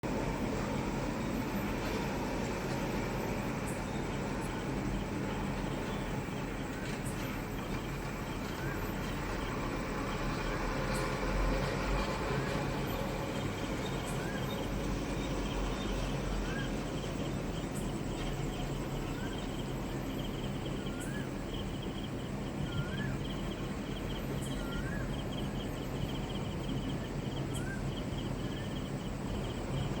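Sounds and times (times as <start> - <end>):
outdoor background hum: 0.0 - 30.0
insect trill: 0.1 - 30.0
bird calling: 20.5 - 22.0, 22.6 - 28.8.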